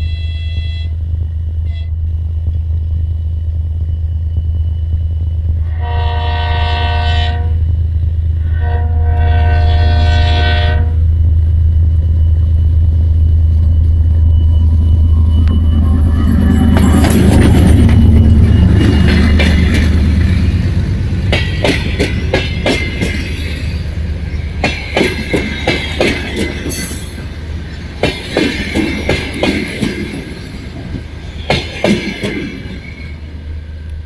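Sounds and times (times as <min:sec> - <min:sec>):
locomotive horn blasts: 0:00.0 - 0:01.0, 0:01.6 - 0:02.0, 0:05.6 - 0:07.6, 0:08.4 - 0:11.0
diesel locomotive rumble: 0:00.0 - 0:34.0.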